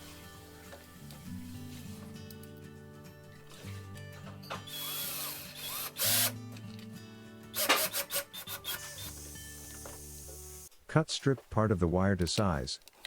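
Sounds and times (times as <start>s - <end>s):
background music: 0.0s - 12.7s
power drill driving screws: 4.7s - 6.4s, 7.5s - 9.3s.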